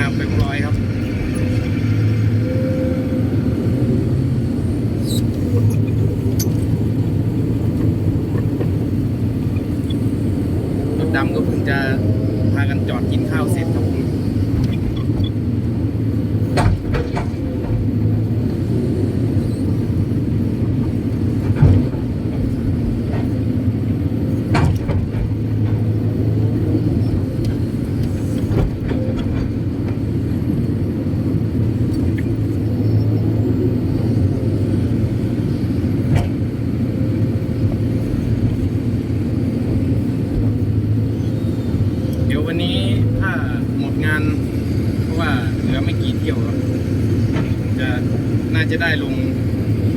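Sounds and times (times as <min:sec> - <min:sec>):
excavator diesel engine rumble: 0:00.0 - 0:49.9
knocks and clunks: 0:16.4 - 0:18.2, 0:20.8 - 0:23.6, 0:24.2 - 0:30.8, 0:44.4 - 0:48.5.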